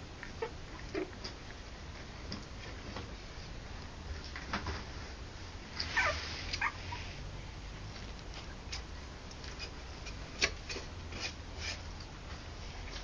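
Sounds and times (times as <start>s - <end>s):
puppy whining: 5.8s - 7.2s.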